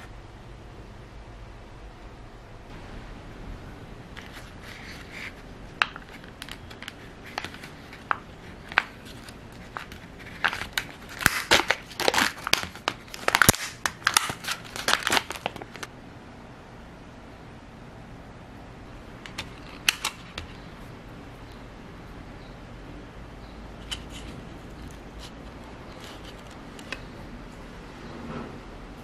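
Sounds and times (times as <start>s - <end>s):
package rustling and ticks: 4.2s - 15.9s
wrapping crinkling: 4.2s - 15.9s, 23.9s - 27.1s.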